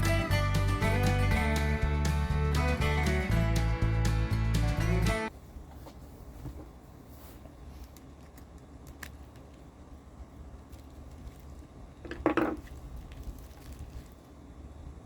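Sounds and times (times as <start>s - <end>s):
small parts rattling clatter: 10.7s - 14.2s.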